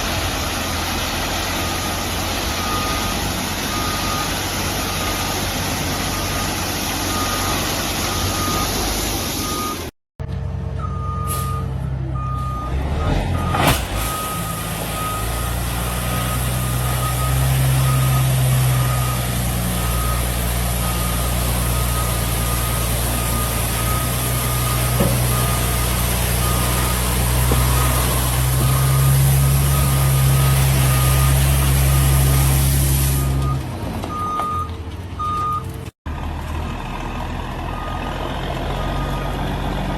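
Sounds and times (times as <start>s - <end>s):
diesel truck engine running: 0.0s - 39.9s
reversing alarm beeping: 1.6s - 5.4s, 9.4s - 9.9s, 10.8s - 35.7s.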